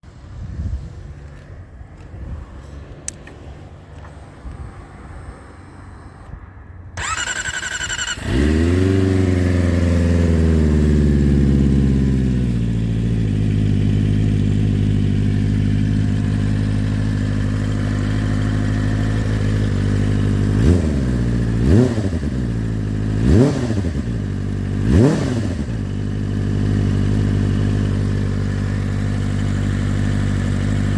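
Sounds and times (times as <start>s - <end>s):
engine throttle blips: 3.0s - 30.9s
electric starter cranking: 7.0s - 8.6s
motorcycle engine idling: 7.0s - 30.9s.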